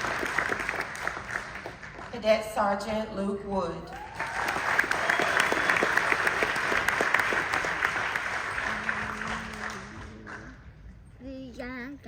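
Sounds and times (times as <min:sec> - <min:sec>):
audience applauding: 0:00.0 - 0:02.2, 0:03.9 - 0:10.6.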